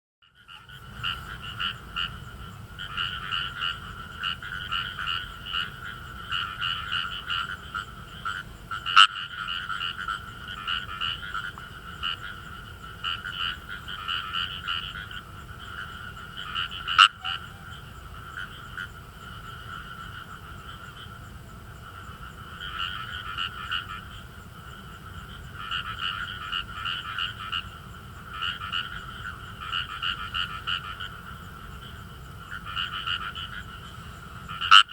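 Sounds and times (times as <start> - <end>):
frogs croaking in chorus: 0.2 - 34.9.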